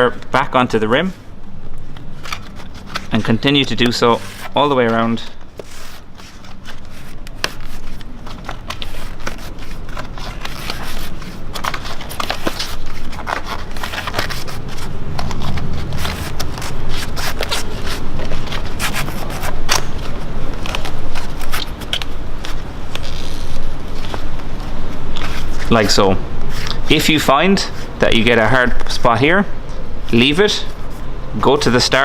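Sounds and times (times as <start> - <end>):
rubber tyre scraping against rim: 2.3 - 27.0.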